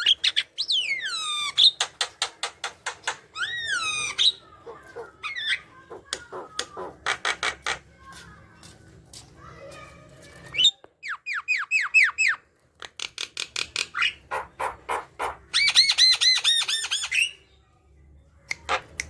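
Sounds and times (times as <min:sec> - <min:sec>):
bird chattering song: 0:10.6 - 0:17.6.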